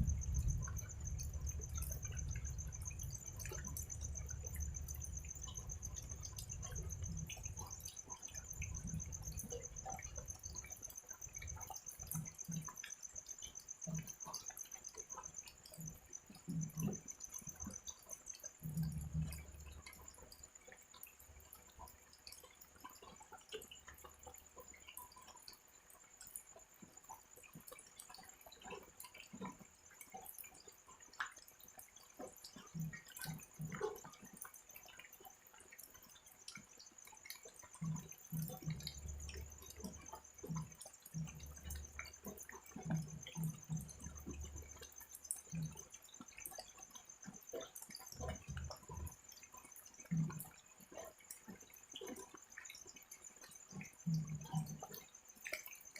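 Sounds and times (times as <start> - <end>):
low pulsing sounds: 0.0 - 7.6
cricket trilling: 0.0 - 55.9
raindrops dripping: 0.0 - 55.9.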